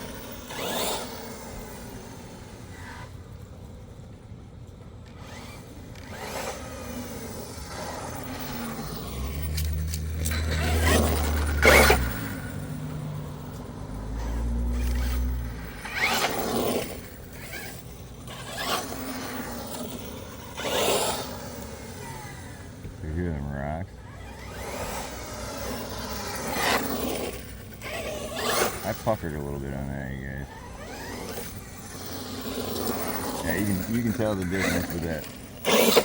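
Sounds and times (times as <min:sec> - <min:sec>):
low motor hum: 0:00.0 - 0:36.0
tyres crunching on gravel: 0:07.5 - 0:36.0.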